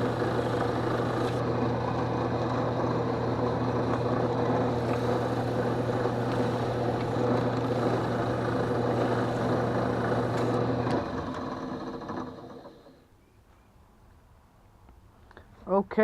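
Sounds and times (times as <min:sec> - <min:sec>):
sanding wood rasping hiss: 0:00.0 - 0:01.4
drill press motor humming: 0:00.0 - 0:13.1.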